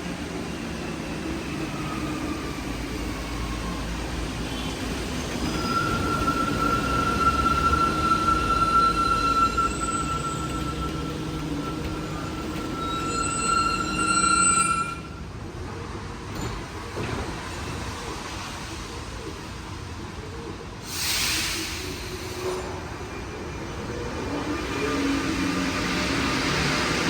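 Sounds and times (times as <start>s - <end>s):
train high whine: 0.0s - 15.5s.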